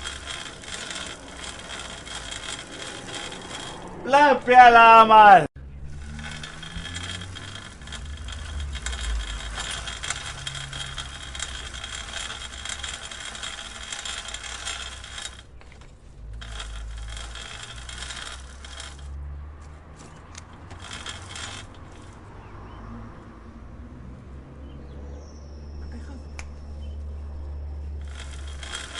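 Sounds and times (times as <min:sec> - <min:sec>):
bicycle chain clicking: 0:00.0 - 0:04.6, 0:05.7 - 0:22.4, 0:28.0 - 0:28.9.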